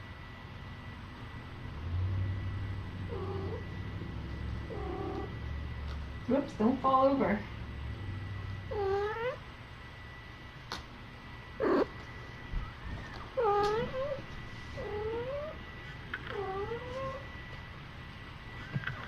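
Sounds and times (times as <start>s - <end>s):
kitten mewing: 8.7s - 9.4s, 11.6s - 12.0s.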